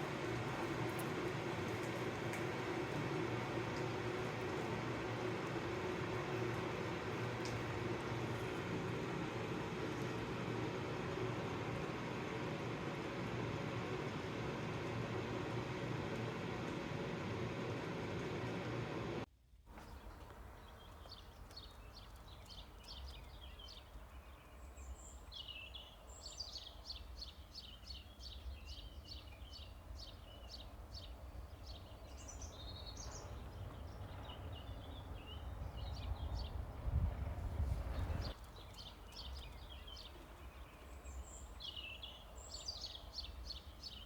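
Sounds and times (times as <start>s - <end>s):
songbirds chirping and trilling: 19.8s - 44.0s
car road noise hiss: 32.2s - 38.3s
low rumble: 33.0s - 38.4s.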